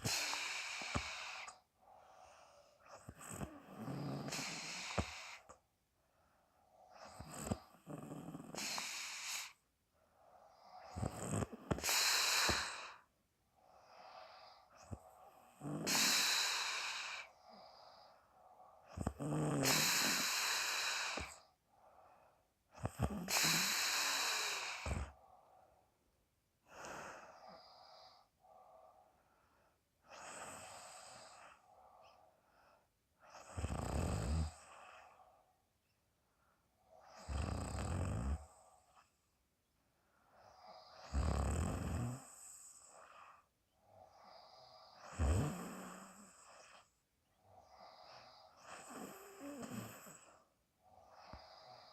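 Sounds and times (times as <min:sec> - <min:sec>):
woman snoring: 0:00.0 - 0:01.6, 0:02.8 - 0:05.6, 0:06.9 - 0:09.6, 0:10.5 - 0:13.1, 0:13.9 - 0:18.2, 0:18.8 - 0:21.5, 0:22.8 - 0:25.2, 0:30.1 - 0:31.8, 0:33.2 - 0:35.2, 0:37.0 - 0:39.0, 0:40.4 - 0:51.9.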